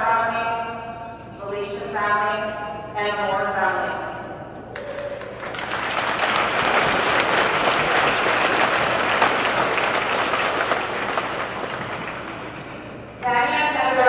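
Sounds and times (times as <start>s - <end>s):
crowd applauding: 4.7s - 13.2s.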